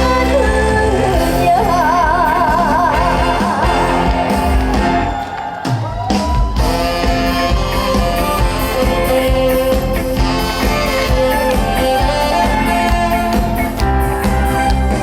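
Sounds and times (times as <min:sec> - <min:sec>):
person singing with vibrato: 0:00.0 - 0:05.1
backing band music: 0:00.0 - 0:15.0.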